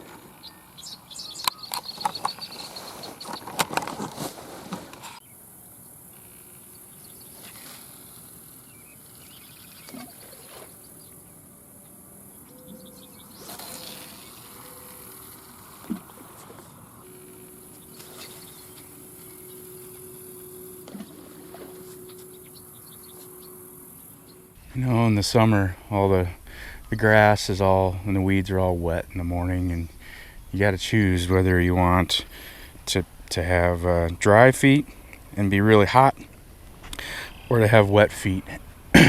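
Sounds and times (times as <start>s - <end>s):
faint low hum: 5.2s - 39.0s
high-pitched insect drone: 12.4s - 15.9s, 17.0s - 24.6s.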